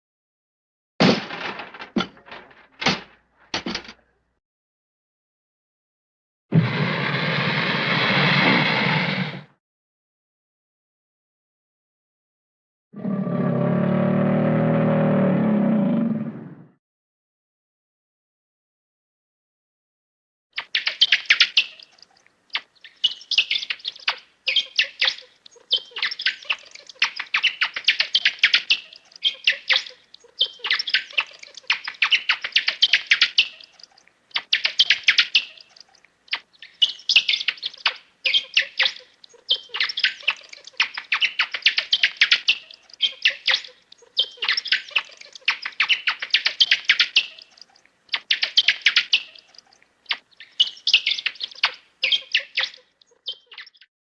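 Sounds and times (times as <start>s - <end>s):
small birds chirping: 20.6s - 54.0s.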